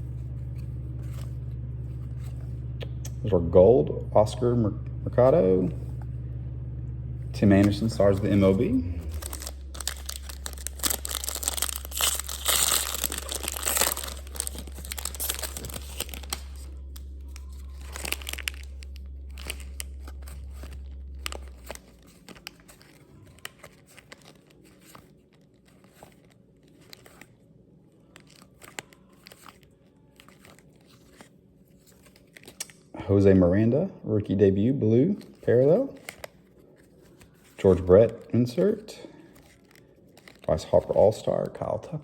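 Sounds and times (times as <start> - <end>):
plastic wrapper tearing and crinkling: 7.6 - 32.9, 35.1 - 41.7.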